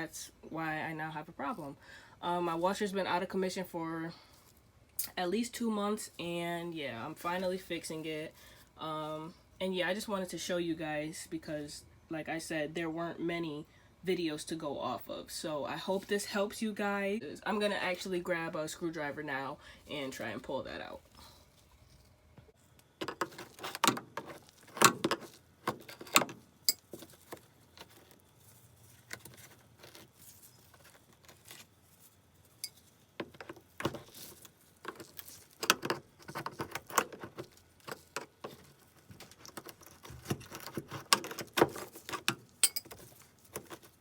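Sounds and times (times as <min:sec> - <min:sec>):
hand tools clicking and clattering: 0:39.2 - 0:43.9.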